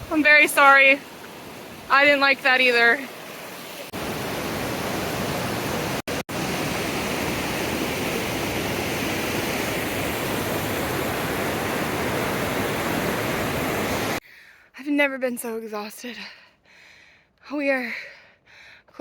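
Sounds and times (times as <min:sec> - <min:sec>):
river water rushing: 0:00.0 - 0:14.2.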